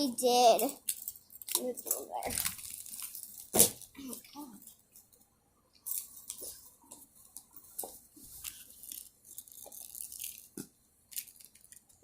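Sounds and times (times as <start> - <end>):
plastic toys clicking and rustling: 0.2 - 4.8, 8.4 - 12.0.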